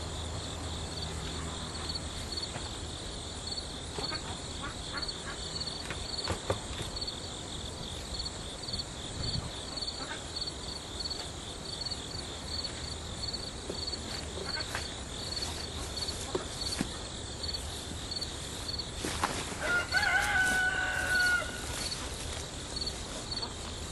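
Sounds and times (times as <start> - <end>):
insects chirping: 0.0 - 23.9
rooster crowing: 19.6 - 22.0.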